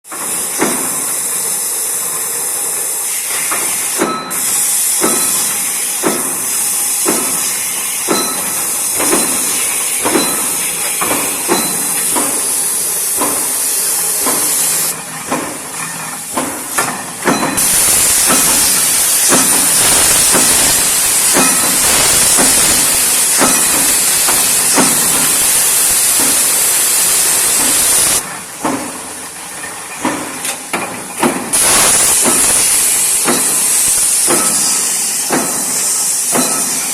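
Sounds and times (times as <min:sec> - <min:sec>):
loud steady hiss: 0:00.2 - 0:14.9, 0:17.5 - 0:28.3, 0:31.5 - 0:36.9
punch press clacking: 0:07.0 - 0:15.6, 0:16.3 - 0:29.0, 0:30.0 - 0:36.9.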